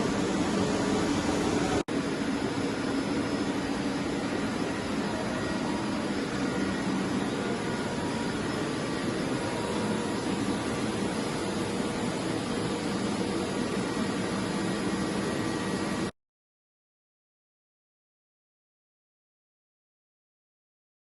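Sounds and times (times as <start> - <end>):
industrial machinery hum: 0.0 - 16.1.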